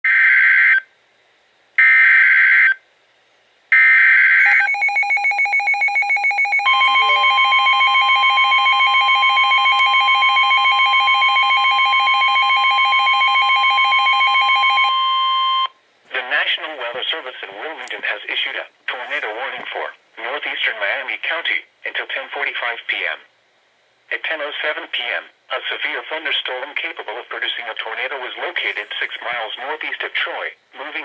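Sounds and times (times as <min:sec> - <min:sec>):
steady high alarm tone: 0:03.7 - 0:15.7.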